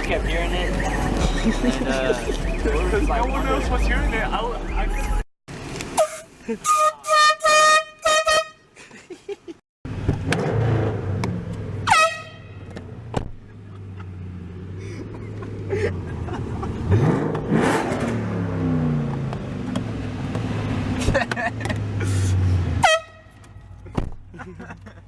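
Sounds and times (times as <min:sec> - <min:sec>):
car engine running: 0:00.0 - 0:05.2
air horn blast: 0:06.0 - 0:08.6, 0:11.8 - 0:12.6, 0:22.8 - 0:23.3
engine revving: 0:09.9 - 0:11.9, 0:14.1 - 0:22.8.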